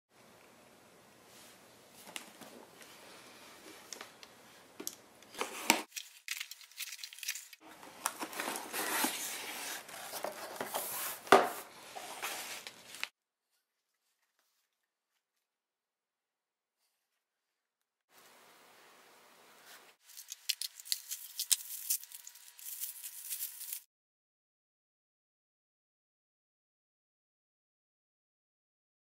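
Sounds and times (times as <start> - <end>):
packaging tearing and crinkling: 5.9 - 10.4, 20.0 - 23.9.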